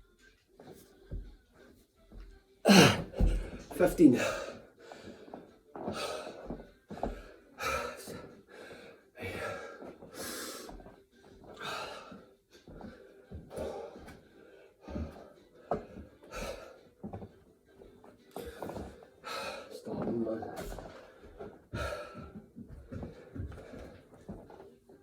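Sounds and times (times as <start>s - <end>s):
man breathing hard and gasping: 2.7s - 10.9s, 11.5s - 16.9s, 18.4s - 19.8s, 20.7s - 24.4s.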